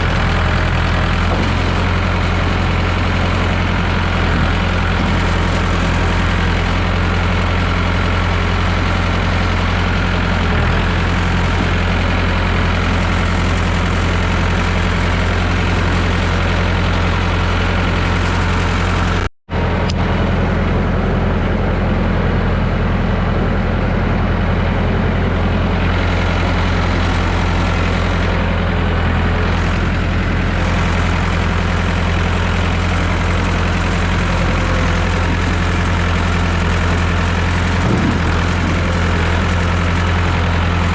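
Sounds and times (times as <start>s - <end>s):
tractor engine running steadily: 0.0s - 40.9s.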